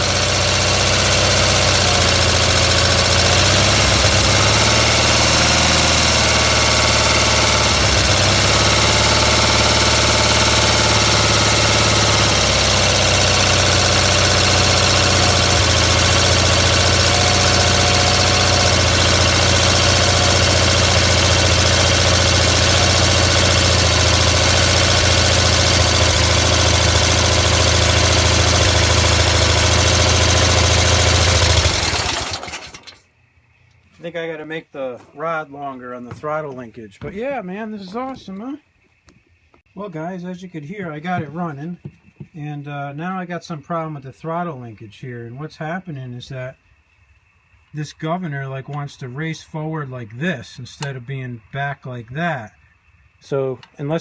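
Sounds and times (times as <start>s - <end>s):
tractor engine running loud: 0.0s - 33.0s.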